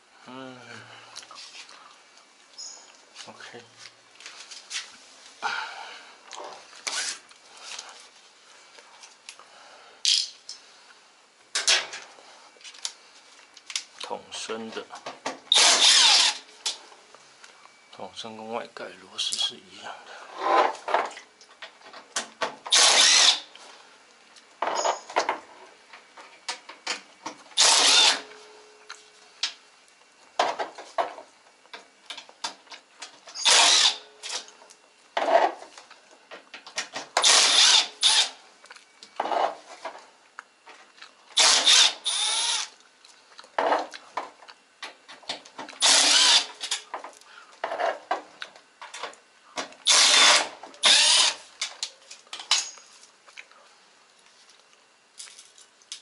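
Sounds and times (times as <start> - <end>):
power drill driver bursts: 15.5 - 16.4, 22.7 - 23.5, 27.6 - 28.3, 33.3 - 34.4, 37.2 - 38.4, 41.4 - 42.7, 45.8 - 46.8, 49.8 - 51.4.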